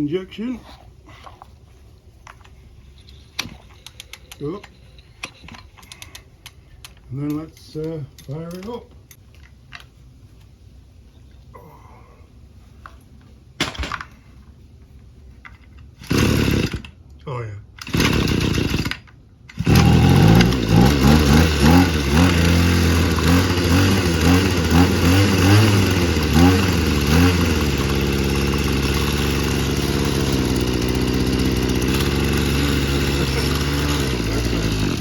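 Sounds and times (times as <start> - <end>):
string trimmer engine revving: 16.0 - 16.9, 17.8 - 35.0.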